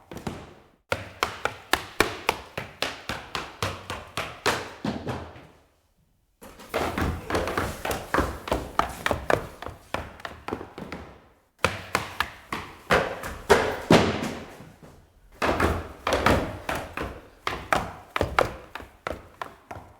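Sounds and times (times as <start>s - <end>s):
footsteps on stairs: 6.4s - 19.9s.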